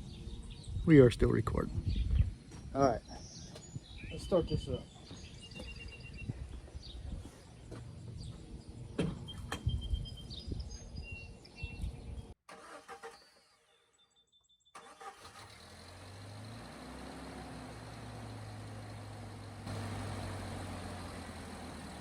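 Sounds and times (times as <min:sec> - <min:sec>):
birds chirping: 0:00.0 - 0:12.4, 0:17.1 - 0:22.0
car engine idling: 0:14.9 - 0:22.0.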